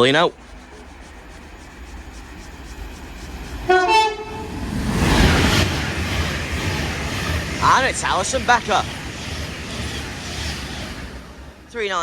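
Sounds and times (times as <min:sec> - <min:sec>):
train passing at speed: 0:00.0 - 0:12.0
two-tone train horn: 0:03.7 - 0:04.6.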